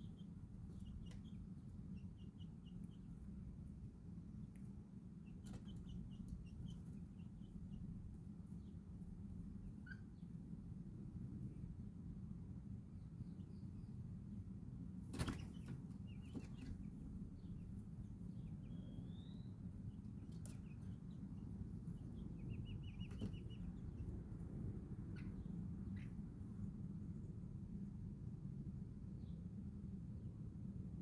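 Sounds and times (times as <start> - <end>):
chicks peeping and chirping: 0.0 - 11.8, 12.8 - 27.6.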